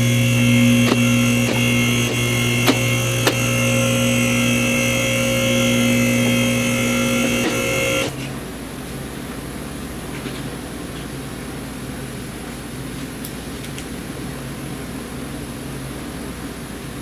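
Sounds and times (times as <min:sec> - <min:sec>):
electric motor hum: 0:00.0 - 0:08.3
background noise: 0:08.1 - 0:17.0.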